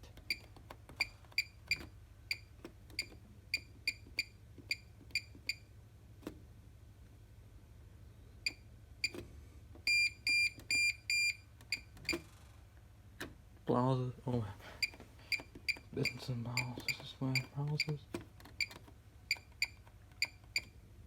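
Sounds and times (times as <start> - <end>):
washing machine panel beeping: 0.3 - 5.7, 9.8 - 12.2, 14.8 - 18.0, 18.6 - 20.7.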